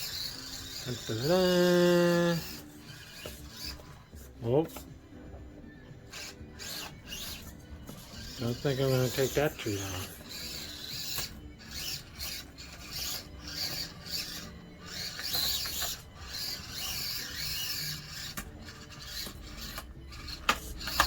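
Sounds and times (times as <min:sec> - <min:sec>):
small electric motor whirring: 0:00.0 - 0:05.0, 0:05.7 - 0:21.0.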